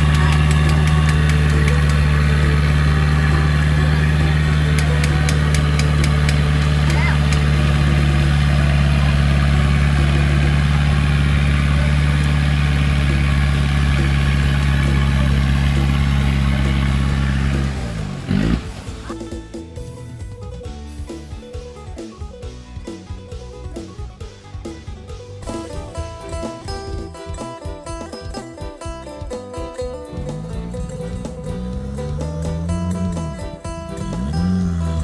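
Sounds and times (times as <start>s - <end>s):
vehicle engine running: 0.0s - 19.3s, 29.9s - 35.0s.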